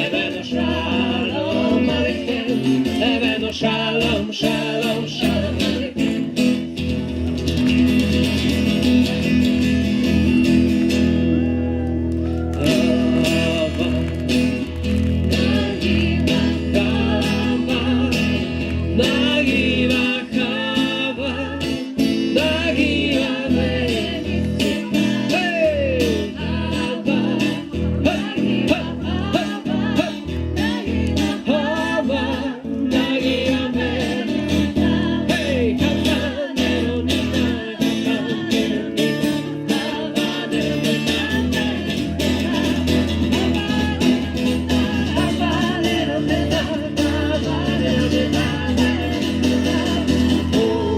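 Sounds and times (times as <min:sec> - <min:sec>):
group of voices singing: 0:00.0 - 0:06.9, 0:12.5 - 0:50.9
strummed acoustic guitar: 0:00.0 - 0:50.9.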